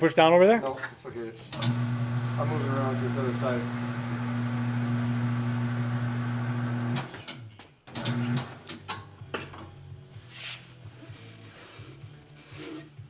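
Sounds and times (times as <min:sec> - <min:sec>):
electric motor humming: 0:01.6 - 0:07.1.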